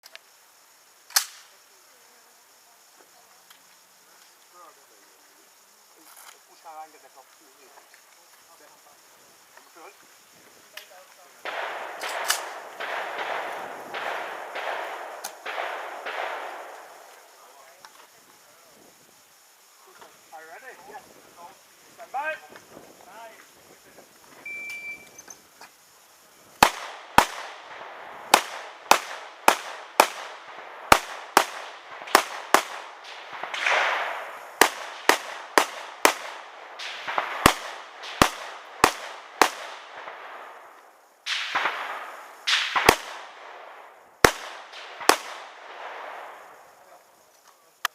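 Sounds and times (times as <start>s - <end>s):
rifle shots echoing: 11.4s - 17.6s, 26.6s - 46.7s.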